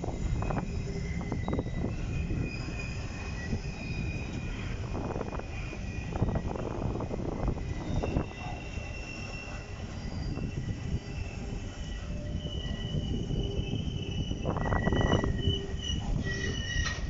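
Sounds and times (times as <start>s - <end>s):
train rumble: 0.0s - 17.0s
train wheels squealing: 0.0s - 17.0s
train clatter: 14.0s - 17.0s.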